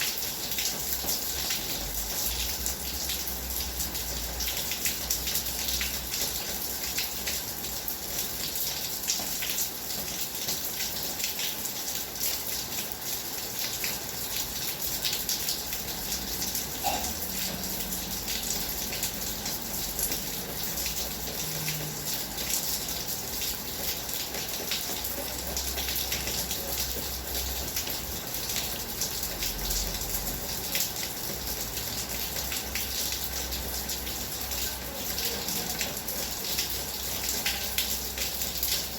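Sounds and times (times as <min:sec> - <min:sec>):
heavy rain: 0:00.0 - 0:38.9.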